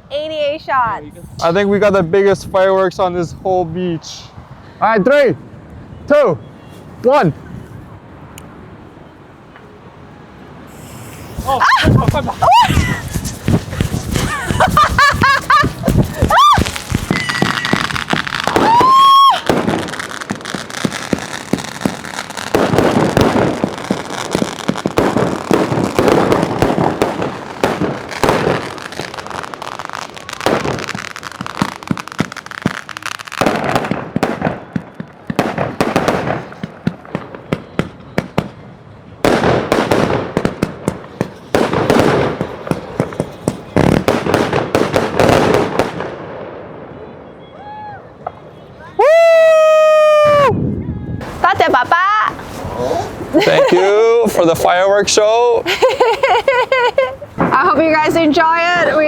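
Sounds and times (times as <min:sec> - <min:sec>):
firework whistle: 0:10.6 - 0:36.6
firework barrage bangs and crackle: 0:10.7 - 0:47.3, 0:54.3 - 0:59.0.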